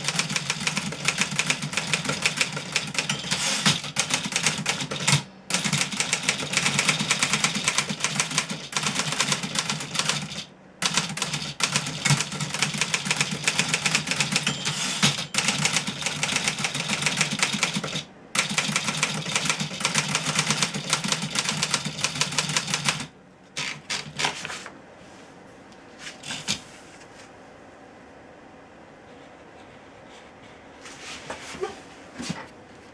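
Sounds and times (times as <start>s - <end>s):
typewriter typing fast: 0.0s - 24.4s.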